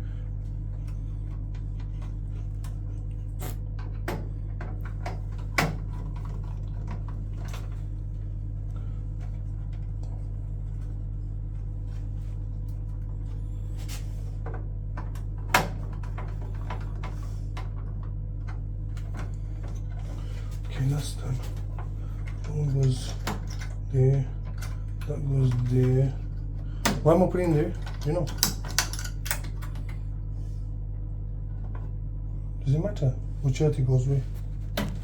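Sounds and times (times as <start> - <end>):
steady low hum: 0.0 - 35.0
tools clicking and knocking: 27.7 - 29.9.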